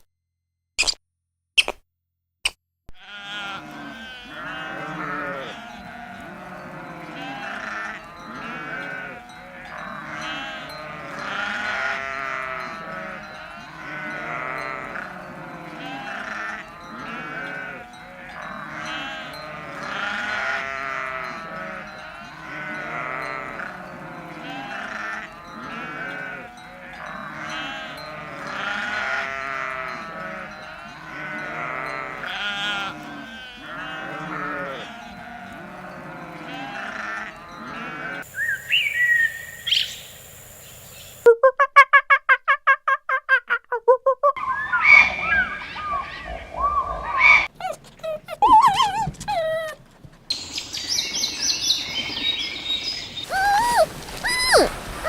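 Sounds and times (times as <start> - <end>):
flock bleating: 2.9 - 6.2, 7.0 - 23.7, 24.3 - 35.8, 53.3 - 54.8.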